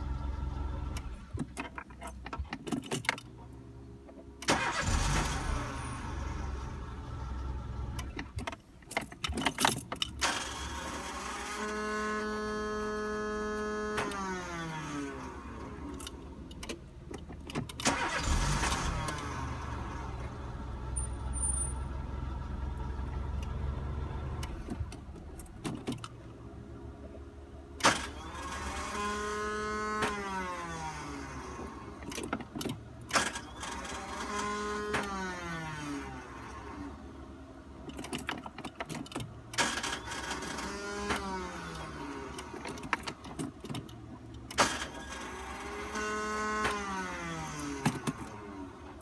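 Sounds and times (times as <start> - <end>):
starter motor whine: 4.5 - 8.2, 17.7 - 25.6, 27.8 - 32.0, 33.2 - 36.8
car engine idling: 15.4 - 26.5.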